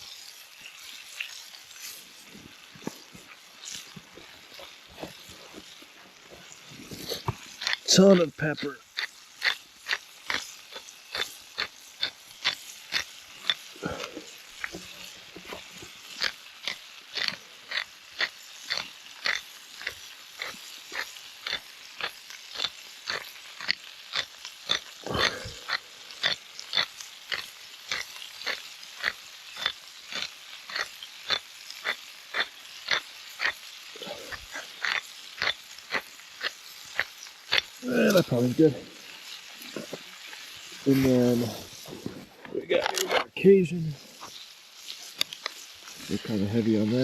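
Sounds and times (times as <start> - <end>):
pepper shaker clicks: 8.9 - 13.7, 16.2 - 33.6.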